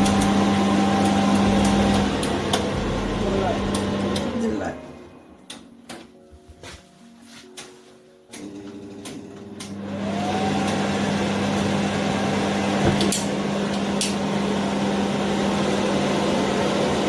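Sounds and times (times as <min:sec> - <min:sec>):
extractor fan motor humming: 0:00.0 - 0:05.4, 0:08.3 - 0:17.0.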